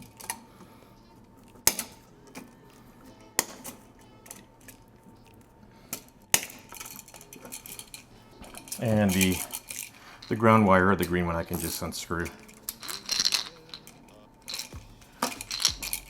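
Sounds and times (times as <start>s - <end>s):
wire cutters snipping wire: 1.6s - 2.5s, 3.4s - 4.8s.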